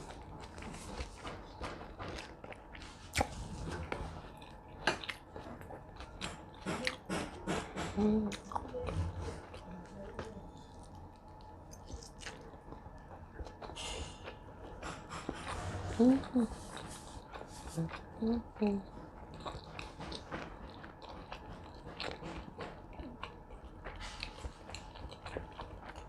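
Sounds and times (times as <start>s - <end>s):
person chewing food: 0.0s - 26.0s
person murmuring: 15.7s - 16.7s.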